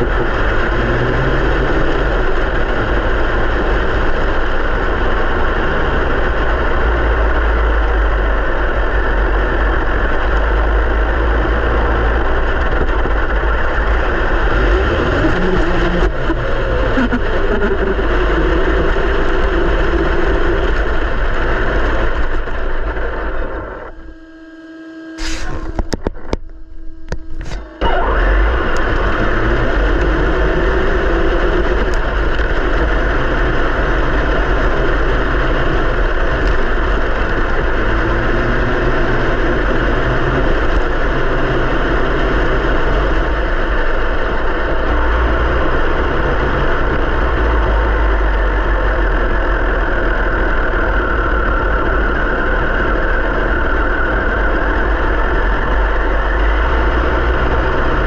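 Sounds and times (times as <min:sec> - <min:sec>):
tyre rumble and chassis rattle: 0:00.0 - 0:24.2, 0:25.2 - 0:58.0
electric motor whir: 0:13.9 - 0:21.0, 0:23.8 - 0:35.7.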